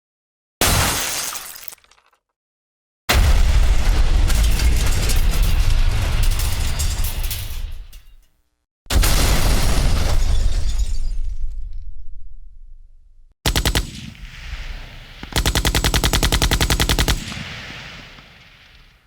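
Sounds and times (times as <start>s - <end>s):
machine-gun fire: 13.5s - 18.2s.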